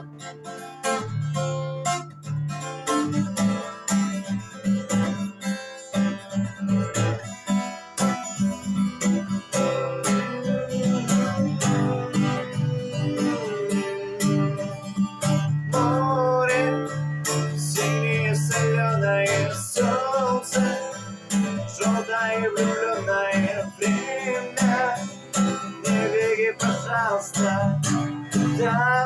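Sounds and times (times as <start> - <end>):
acoustic guitar rhythm: 0.0 - 29.0
wavering held melody: 8.0 - 29.0.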